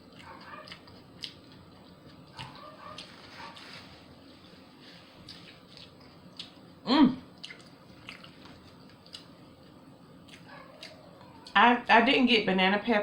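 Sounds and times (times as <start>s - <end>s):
wet chewing and mouth clicks: 0.0s - 3.8s, 5.2s - 6.7s, 7.4s - 11.6s.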